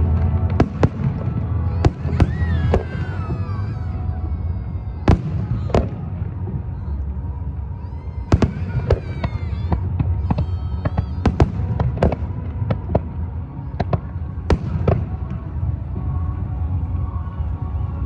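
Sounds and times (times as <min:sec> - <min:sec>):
fireworks banging: 0:00.0 - 0:03.9, 0:08.3 - 0:16.2
low background rumble: 0:00.0 - 0:18.0.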